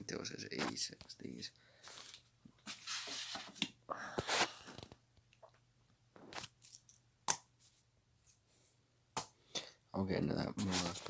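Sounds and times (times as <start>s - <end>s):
rustling and handling: 1.8s - 5.0s, 10.6s - 11.0s.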